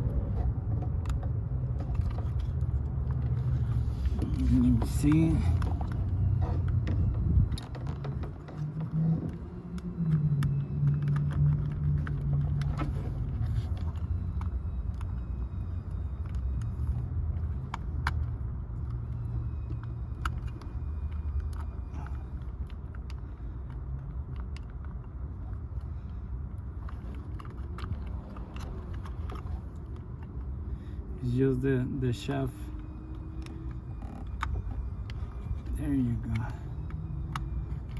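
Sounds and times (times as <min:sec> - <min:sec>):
low rumble: 0:00.0 - 0:25.0
plastic and metal parts clicking: 0:00.3 - 0:15.2, 0:15.8 - 0:30.7.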